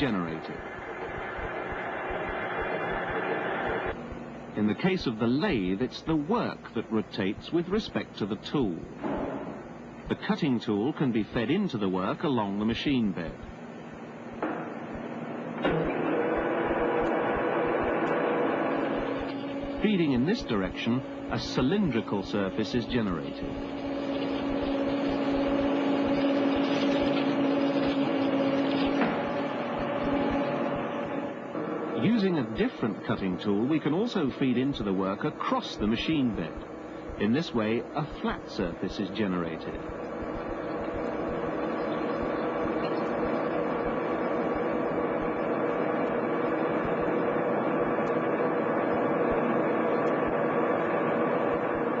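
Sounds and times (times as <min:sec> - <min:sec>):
metal lathe hum: 0:15.7 - 0:32.1, 0:39.6 - 0:52.0.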